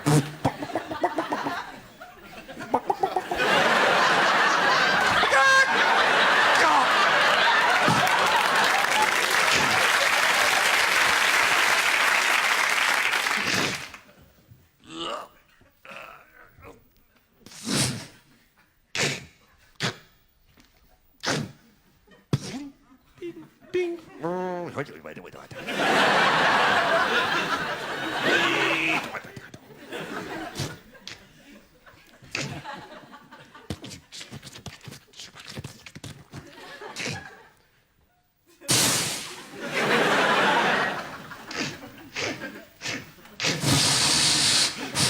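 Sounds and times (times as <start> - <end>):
man making hissing mouth sounds: 0.0 - 1.6, 2.7 - 3.4, 13.4 - 13.9, 17.4 - 20.2, 21.2 - 21.7, 22.3 - 22.7, 30.6 - 31.2, 32.3 - 32.6, 33.7 - 36.0, 37.0 - 37.3, 38.7 - 39.4, 41.5 - 45.0
mouth clucking: 0.0 - 1.8, 2.5 - 3.5
pitched vocal blips: 2.6 - 3.4
held vocal tone: 2.6 - 3.6.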